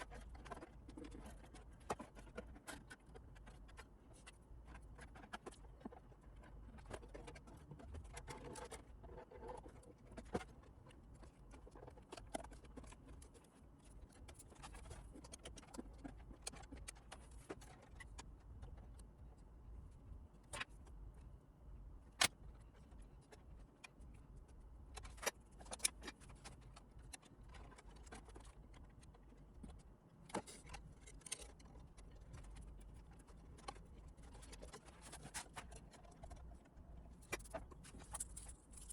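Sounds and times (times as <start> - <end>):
low steady hum: 0.0 - 38.9
small objects clicking and rustling: 24.9 - 38.9.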